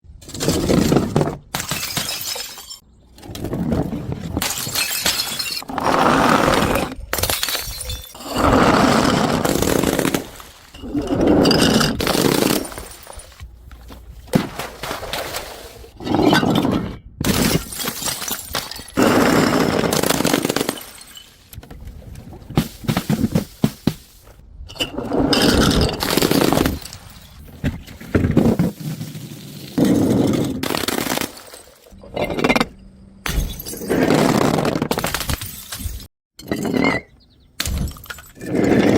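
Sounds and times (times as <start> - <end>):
glass bottles smashing: 0.4 - 2.8, 4.2 - 5.8, 7.1 - 13.5, 17.3 - 21.6, 28.4 - 32.6, 33.2 - 38.4.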